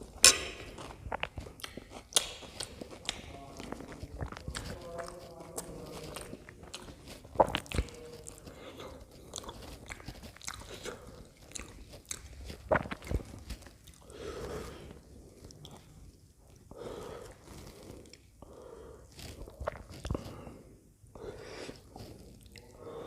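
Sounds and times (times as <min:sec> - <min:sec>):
person biting and chewing: 0:00.0 - 0:20.6
wet mouth clicks: 0:00.2 - 0:14.0.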